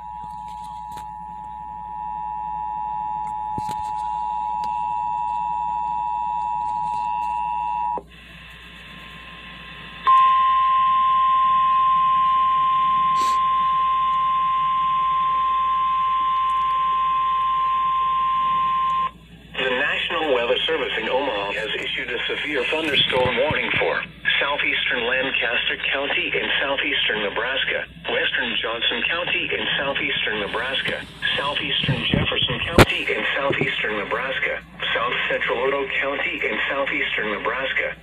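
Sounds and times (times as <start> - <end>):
steady single alarm tone: 10.0 - 19.2
two-tone alert alarm: 10.0 - 19.2.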